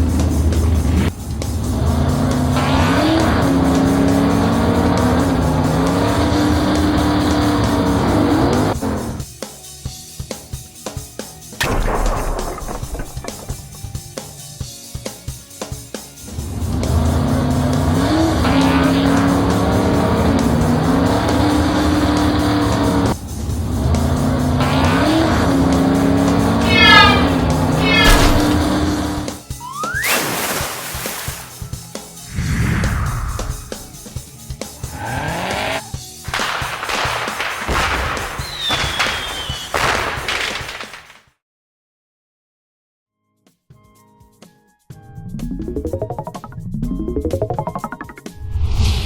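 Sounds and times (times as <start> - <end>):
cartoon vehicle engine revving: 1.8 - 8.9, 16.6 - 23.2, 24.2 - 30.1, 33.3 - 36.1, 45.3 - 48.4
cartoon engine revving: 26.6 - 29.0, 34.8 - 36.1.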